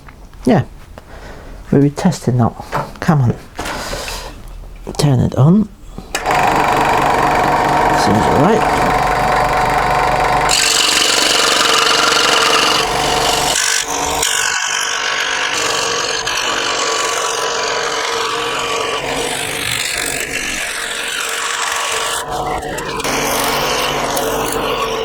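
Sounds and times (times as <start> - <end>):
scroll saw cutting wood: 6.1 - 25.0.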